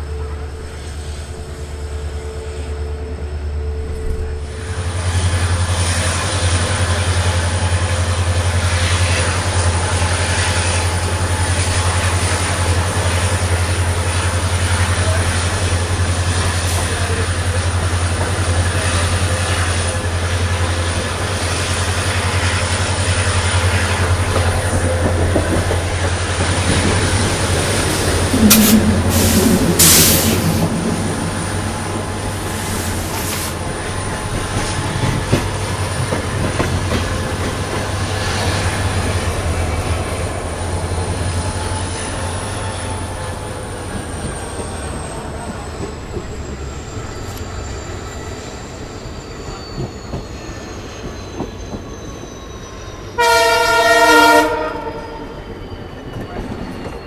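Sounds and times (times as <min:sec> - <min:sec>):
wheel and rail noise: 0:00.0 - 0:53.2
diesel locomotive hum: 0:00.0 - 0:57.0
locomotive horn: 0:26.8 - 0:30.8, 0:53.2 - 0:55.5.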